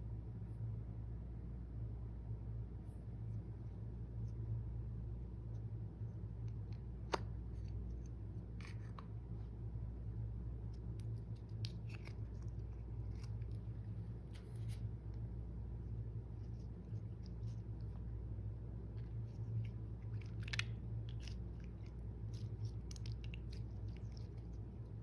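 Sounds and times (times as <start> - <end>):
steady low hum: 0.0 - 25.0
slime clicks and crackles: 20.0 - 24.4.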